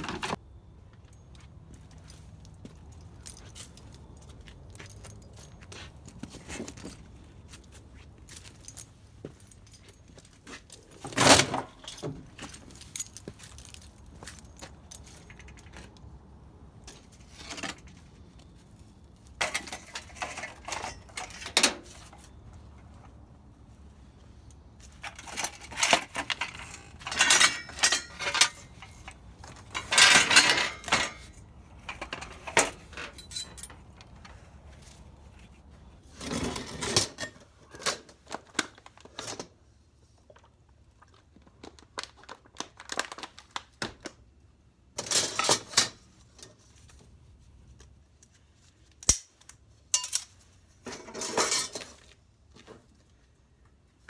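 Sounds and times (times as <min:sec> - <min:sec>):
scrap metal clattering: 0:25.0 - 0:33.9, 0:50.0 - 0:52.1.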